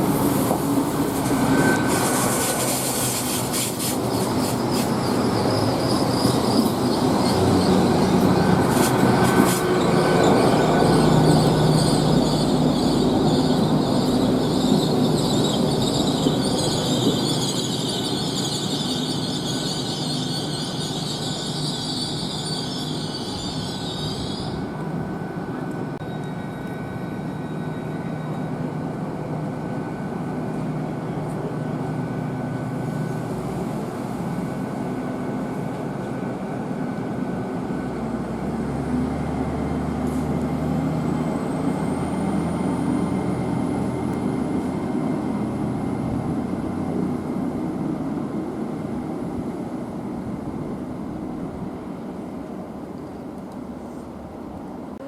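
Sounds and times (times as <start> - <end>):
train rumble: 0.0 - 55.0
train wheel squeal: 0.1 - 38.0.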